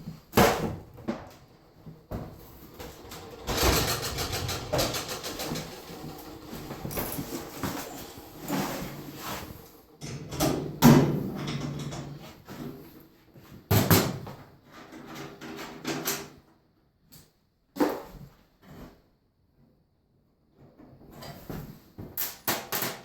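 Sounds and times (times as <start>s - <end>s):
knocks and scraping of washing machine: 0.2s - 12.8s.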